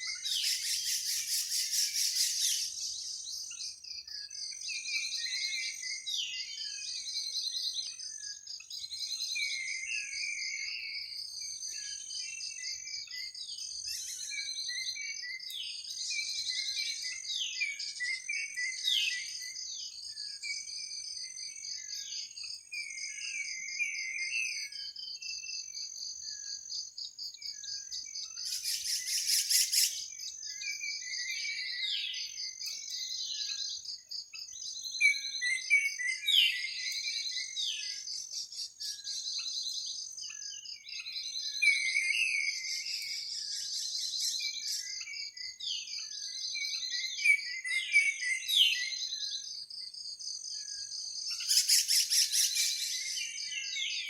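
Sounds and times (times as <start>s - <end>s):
insects trilling: 25.2s - 54.0s
birds chirping: 26.2s - 54.0s.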